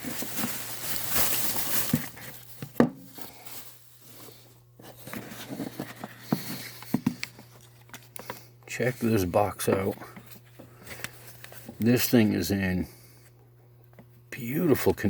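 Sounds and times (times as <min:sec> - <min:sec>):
packaging rustling: 0:00.0 - 0:08.4.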